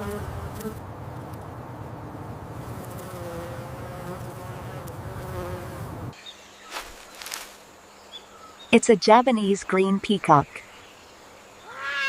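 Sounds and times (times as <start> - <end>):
bee buzzing: 0.0 - 0.8, 2.0 - 7.4.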